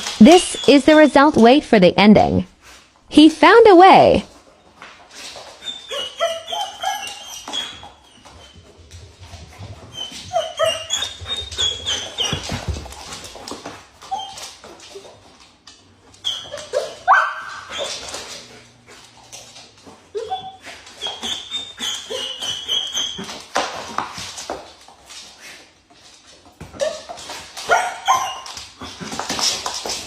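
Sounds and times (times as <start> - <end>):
dog whining and yipping: 5.5 - 8.7, 9.6 - 12.8, 14.0 - 15.0, 16.1 - 18.4, 19.8 - 23.6, 26.7 - 29.6.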